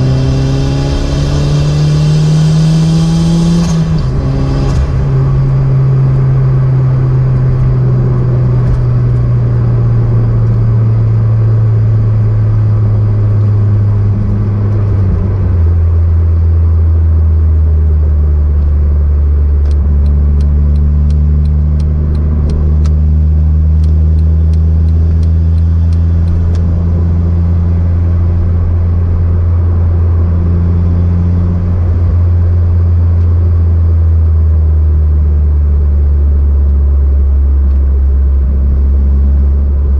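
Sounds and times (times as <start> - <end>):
car engine droning: 0.0 - 39.9
regular clicks: 19.6 - 23.0, 23.7 - 26.6.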